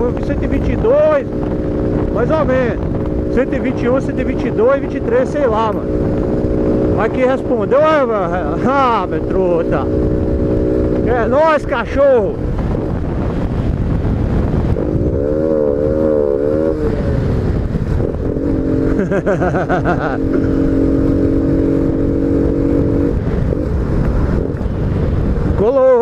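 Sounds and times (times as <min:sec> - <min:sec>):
motorcycle engine at speed: 0:00.0 - 0:26.0
wind rush on microphone: 0:00.0 - 0:26.0.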